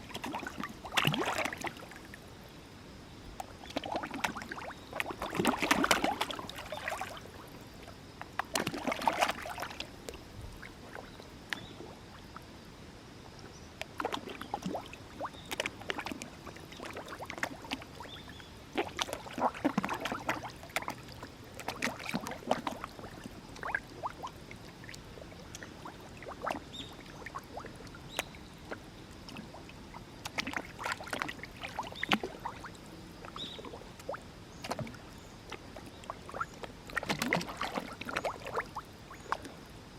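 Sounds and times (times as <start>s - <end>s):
fish splashing at water surface: 0.1s - 2.0s, 3.6s - 7.3s, 8.4s - 9.9s, 18.7s - 24.3s, 30.2s - 32.7s, 36.3s - 38.8s.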